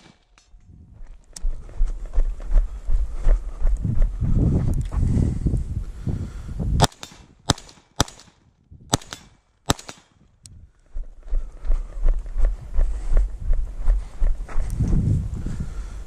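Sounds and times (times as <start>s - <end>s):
rifle shots: 0.0s - 0.4s, 6.8s - 10.2s
low microphone rumble: 0.5s - 7.5s, 10.4s - 16.0s.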